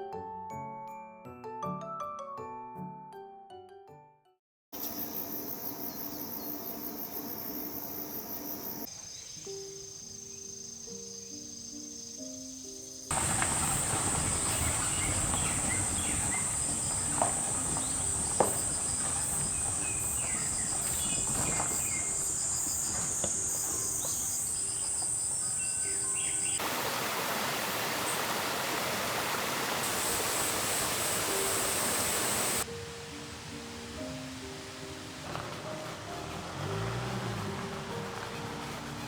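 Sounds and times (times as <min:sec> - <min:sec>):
insects trilling: 0:04.8 - 0:32.6
bird chirps: 0:08.8 - 0:26.6
steady rushing hiss: 0:12.8 - 0:39.0.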